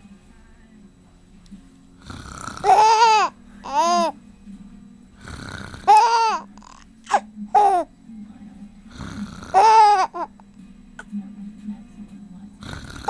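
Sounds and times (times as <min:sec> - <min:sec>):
adult fake snoring: 0:02.0 - 0:03.1, 0:05.2 - 0:06.8, 0:08.9 - 0:09.8, 0:12.6 - 0:13.0.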